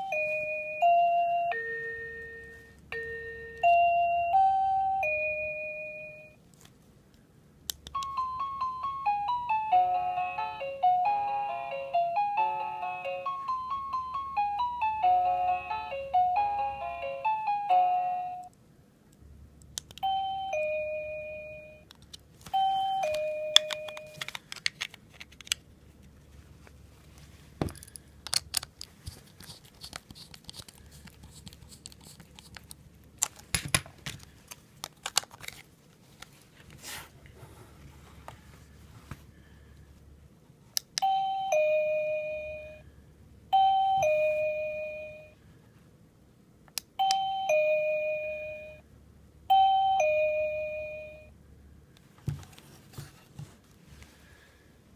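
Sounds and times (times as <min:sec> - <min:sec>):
bell-like chime melody: 0:00.0 - 0:06.4, 0:20.0 - 0:21.8, 0:22.6 - 0:24.1, 0:41.0 - 0:42.9, 0:43.6 - 0:45.4, 0:47.0 - 0:48.8, 0:49.5 - 0:51.4
two-note ding-dong chime: 0:00.0 - 0:06.4, 0:20.0 - 0:21.8, 0:22.6 - 0:24.1, 0:41.0 - 0:42.9, 0:43.6 - 0:45.4, 0:47.0 - 0:48.8, 0:49.5 - 0:51.4
handling noises: 0:21.9 - 0:39.3, 0:52.1 - 0:54.2.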